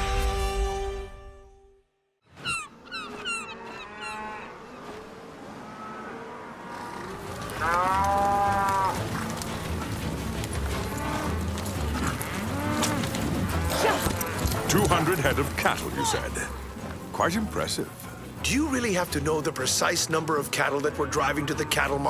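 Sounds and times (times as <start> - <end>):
cattle mooing: 2.7 - 17.0, 20.6 - 22.0.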